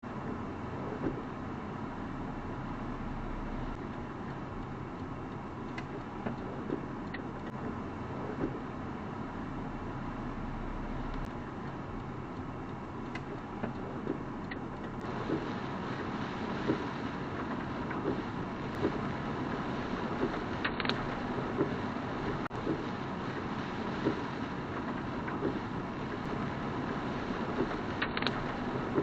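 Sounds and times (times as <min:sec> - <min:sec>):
tyre and road noise: 0:00.0 - 0:29.0
light ticks: 0:03.7 - 0:07.6, 0:08.4 - 0:08.7, 0:11.1 - 0:19.0, 0:20.0 - 0:26.4, 0:27.3 - 0:29.0.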